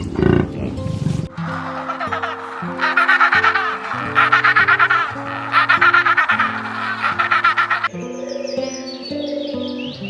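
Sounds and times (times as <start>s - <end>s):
fowl calling in rapid runs: 1.2s - 7.9s.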